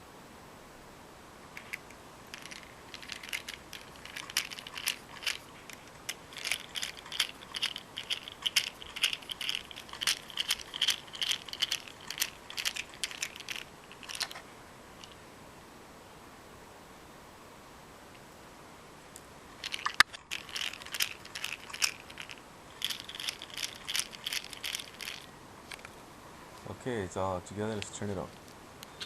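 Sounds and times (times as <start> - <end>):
small camera parts clicking: 1.6 - 14.4, 19.6 - 25.9
precision screwdriver turning: 2.4 - 14.4.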